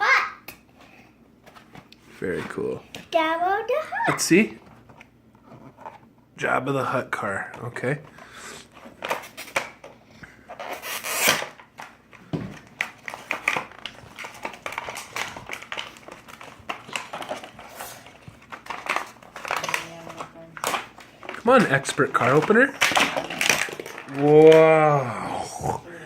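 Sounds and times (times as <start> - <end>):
plastic blister pack torn open: 10.6 - 11.9, 12.8 - 24.9.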